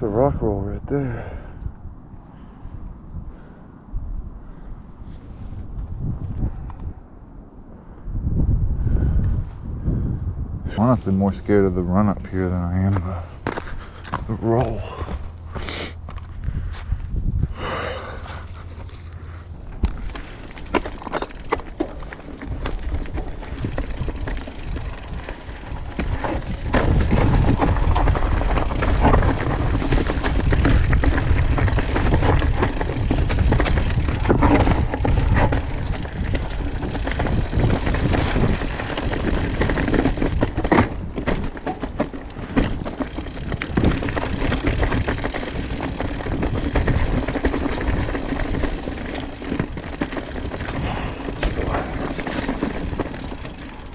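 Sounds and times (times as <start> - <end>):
bike tyres rumbling over rock: 17.6 - 53.9
bike rattling and clicking: 18.2 - 53.9.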